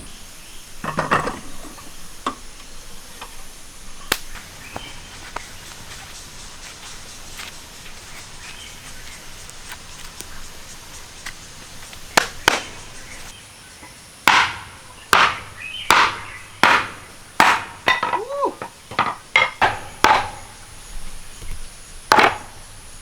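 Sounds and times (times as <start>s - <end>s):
axe chopping firewood: 4.0s - 13.4s, 14.2s - 23.0s.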